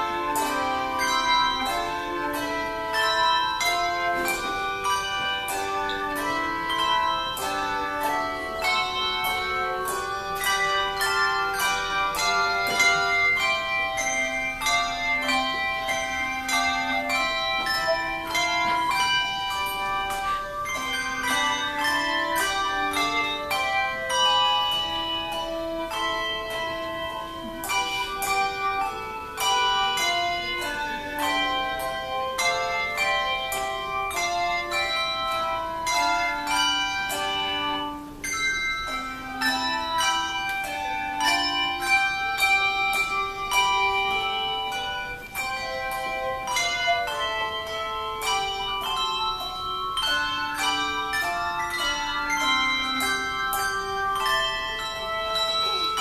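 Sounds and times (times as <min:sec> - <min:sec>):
handbell ensemble playing: 0:00.0 - 0:56.0.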